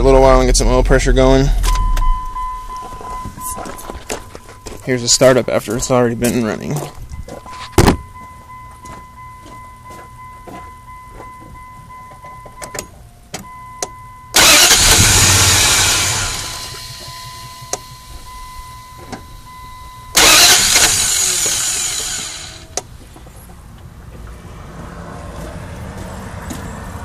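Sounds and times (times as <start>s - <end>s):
dashboard warning chime: 0.1s - 15.1s, 15.8s - 20.6s
engine failing to start: 14.4s - 18.6s, 19.5s - 22.8s.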